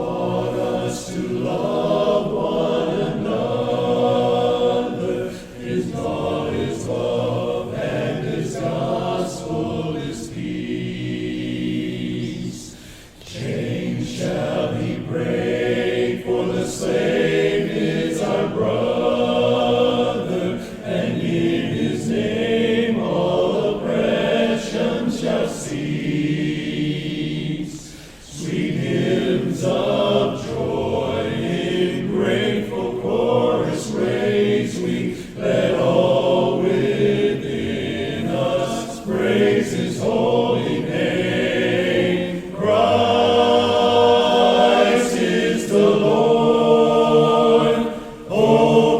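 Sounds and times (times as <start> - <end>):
men singing in close harmony: 0.0 - 48.9.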